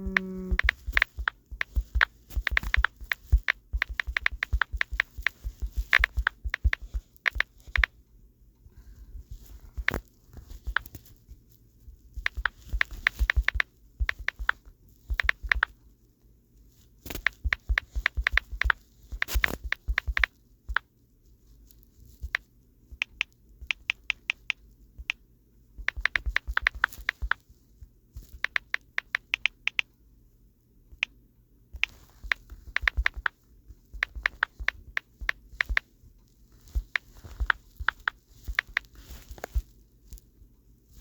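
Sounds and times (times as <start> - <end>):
tapping on phone touchscreen: 0.0 - 7.9, 9.7 - 11.0, 12.2 - 15.8, 17.1 - 20.9, 25.8 - 27.4, 31.8 - 33.4, 34.0 - 35.9.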